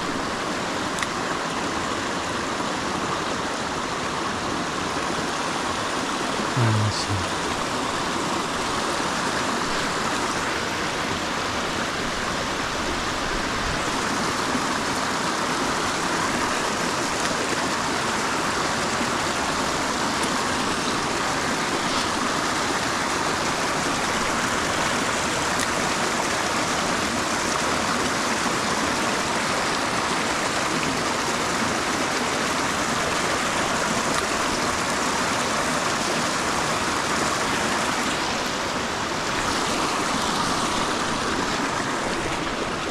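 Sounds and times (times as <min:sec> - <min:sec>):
stream water rushing: 0:00.0 - 0:42.9.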